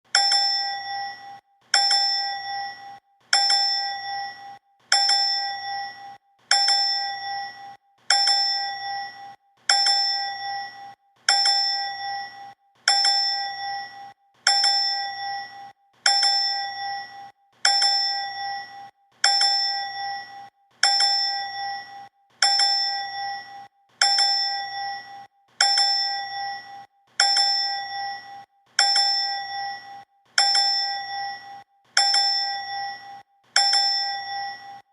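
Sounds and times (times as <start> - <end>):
bright bell ding: 0.1 - 34.9.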